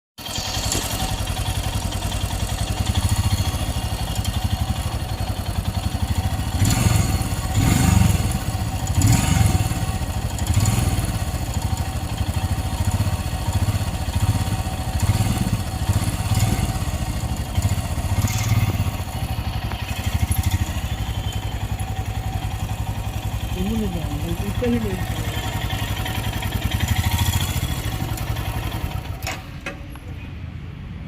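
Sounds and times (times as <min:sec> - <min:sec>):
motorcycle engine running: 0:00.2 - 0:29.4.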